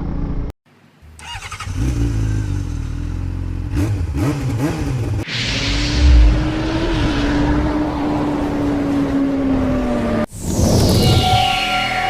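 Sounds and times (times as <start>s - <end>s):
vehicle engine hum: 0.0s - 10.3s
road noise: 0.0s - 12.0s
steady tone: 5.2s - 9.3s.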